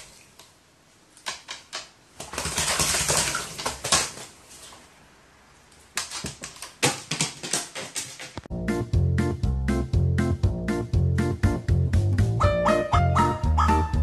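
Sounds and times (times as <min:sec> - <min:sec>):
rustling and clattering: 0:05.8 - 0:08.5.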